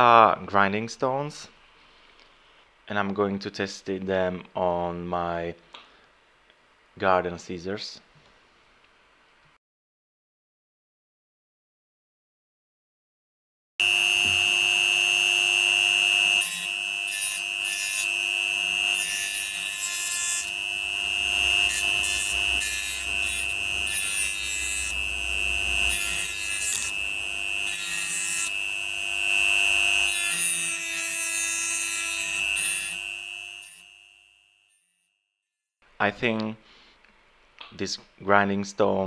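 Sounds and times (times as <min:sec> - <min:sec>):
grinding stone on metal blade: 0:13.8 - 0:35.0
rotary tool whining: 0:13.8 - 0:35.0.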